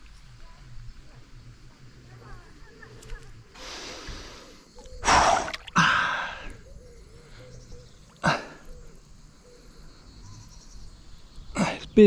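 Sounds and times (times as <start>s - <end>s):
person breathing sharply: 3.6s - 6.6s.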